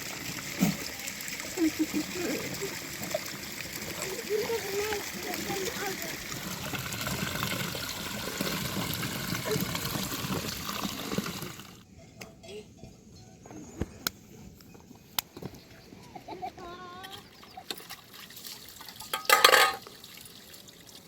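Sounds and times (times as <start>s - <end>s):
faint running water: 0.0s - 11.8s, 16.2s - 21.0s
pots and utensils clinking: 18.9s - 20.0s.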